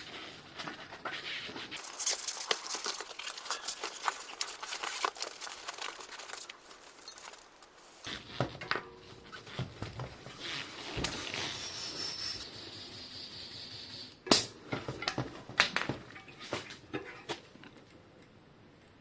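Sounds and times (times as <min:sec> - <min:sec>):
handling bicycle wheel parts: 0:01.7 - 0:08.1
small clicks and rustles: 0:01.8 - 0:08.1.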